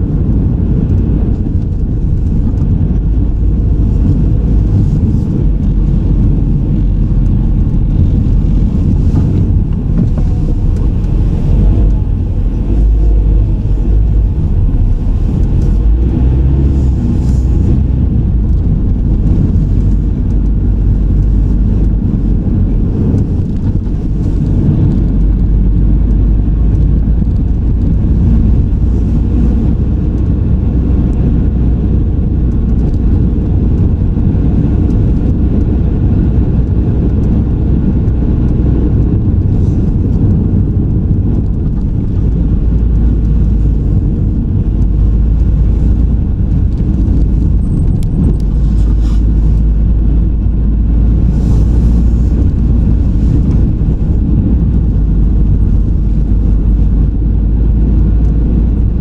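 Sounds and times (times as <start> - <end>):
low rumble of road and engine: 0.0 - 59.0.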